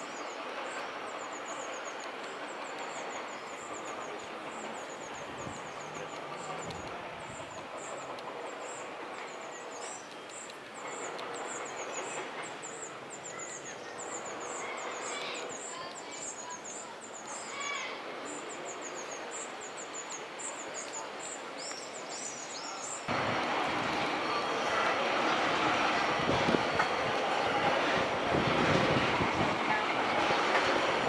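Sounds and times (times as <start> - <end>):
birds chirping: 21.6 - 31.0.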